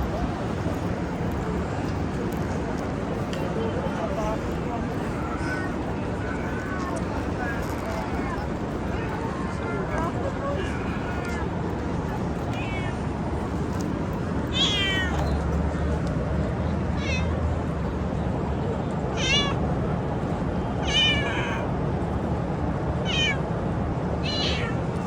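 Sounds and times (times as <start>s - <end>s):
cat meowing: 12.5s - 13.0s, 14.5s - 15.3s, 17.0s - 17.4s, 19.2s - 19.6s, 20.8s - 21.6s, 23.0s - 23.4s, 24.2s - 24.8s.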